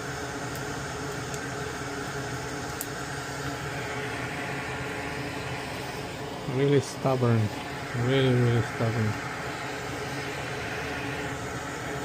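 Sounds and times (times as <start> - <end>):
airy blower whir: 0.0 - 12.0.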